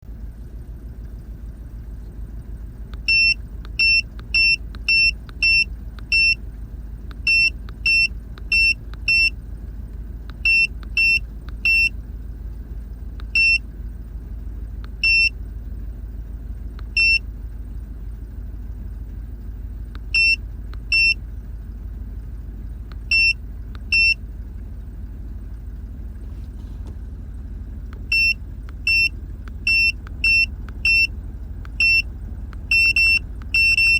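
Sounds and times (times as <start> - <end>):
truck engine idling: 0.0 - 33.9
high electronic beeps: 13.4 - 13.6, 15.0 - 15.3, 17.0 - 17.2, 20.2 - 21.2, 23.1 - 24.2, 28.1 - 29.1, 29.7 - 31.1, 31.8 - 32.1.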